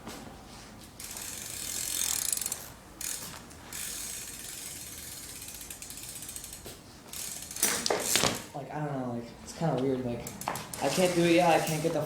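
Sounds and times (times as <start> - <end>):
bike hub ratcheting clicks: 1.0 - 8.5, 10.2 - 11.9.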